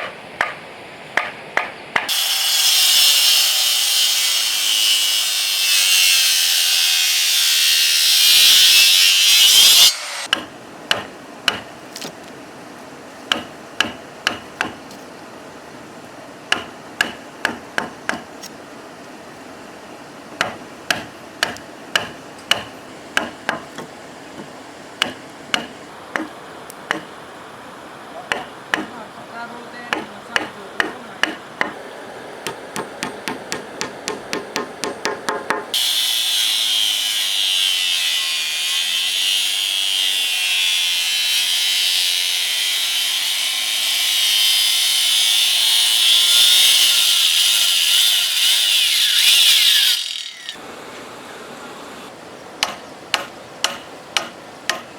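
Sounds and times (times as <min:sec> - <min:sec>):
saw cutting wood: 0:02.1 - 0:10.4, 0:35.6 - 0:50.6.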